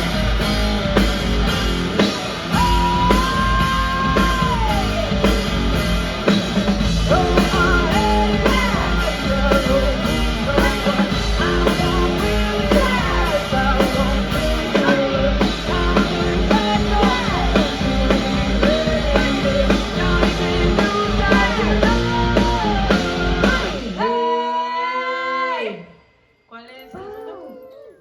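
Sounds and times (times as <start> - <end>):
rock band playing: 0.0 - 24.1
person singing lead vocal: 2.5 - 5.5, 7.0 - 25.9.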